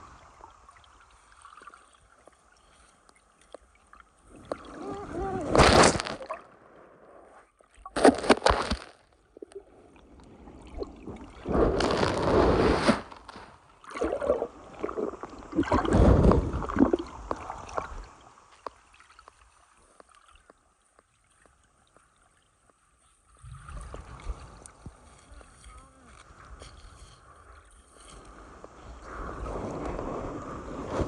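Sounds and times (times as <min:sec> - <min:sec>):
water sloshing and splashing: 0:00.0 - 0:06.6, 0:07.5 - 0:28.9.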